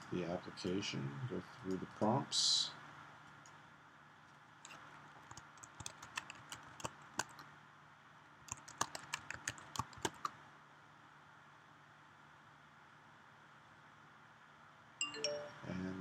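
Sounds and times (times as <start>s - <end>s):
computer keyboard typing: 4.7s - 7.4s, 8.5s - 10.4s.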